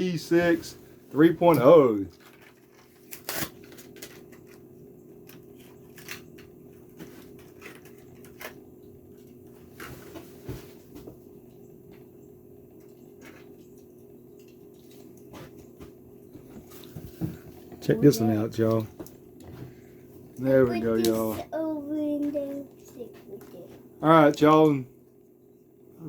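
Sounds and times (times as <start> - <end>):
plastic packaging crinkling: 2.1 - 4.6.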